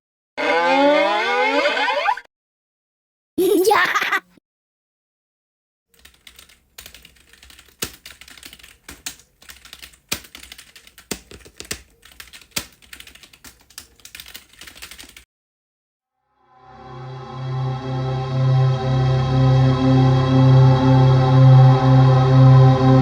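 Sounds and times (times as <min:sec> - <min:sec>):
keyboard typing clicks: 0:06.0 - 0:15.2.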